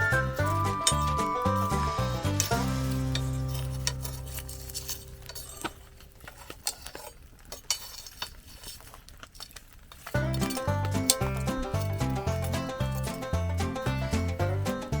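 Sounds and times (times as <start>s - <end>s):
held music chord: 0.0s - 4.6s, 10.2s - 15.0s
small items clinking: 0.0s - 15.0s.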